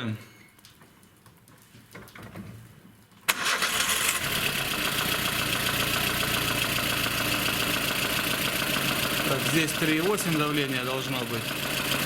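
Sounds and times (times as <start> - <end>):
car engine starting and idling: 3.3 - 12.0
harsh high-pitched grinding rattle: 3.3 - 12.0.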